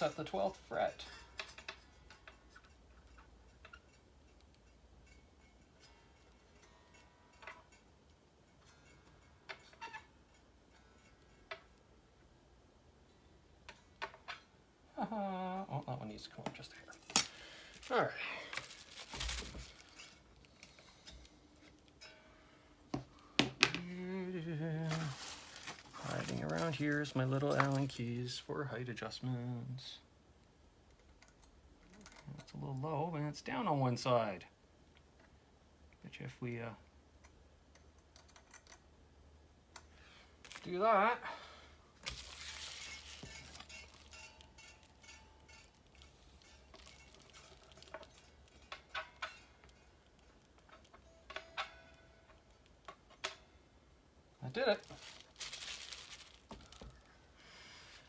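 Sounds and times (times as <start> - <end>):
man humming: 23.8 - 25.2
metallic clinking: 42.2 - 53.4.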